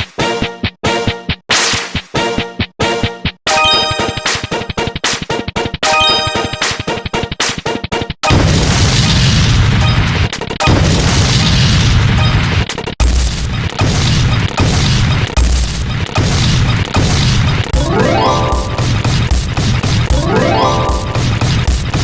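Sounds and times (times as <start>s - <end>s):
rapid-fire sound effects: 13.0s - 22.0s.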